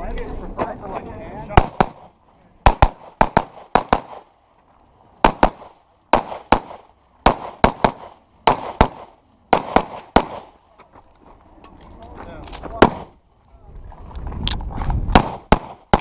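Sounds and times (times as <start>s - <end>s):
rapid pistol shots: 1.6s - 4.3s, 5.2s - 10.6s, 15.1s - 16.0s.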